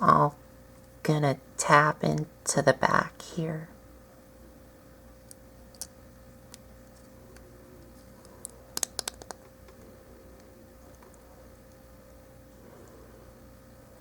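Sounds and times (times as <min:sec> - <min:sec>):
faint steady hum: 0:00.0 - 0:14.0
plastic parts clicking: 0:08.4 - 0:09.5
sharp plastic snaps: 0:08.4 - 0:09.5.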